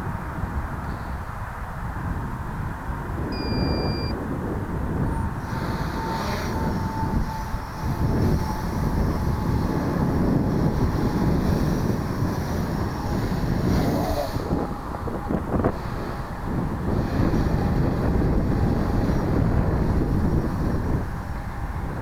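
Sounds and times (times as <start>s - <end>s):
wind rumbling on microphone: 0.0s - 22.0s
drone motors buzzing: 3.3s - 4.2s, 5.1s - 22.0s
electronic beep: 3.3s - 4.2s.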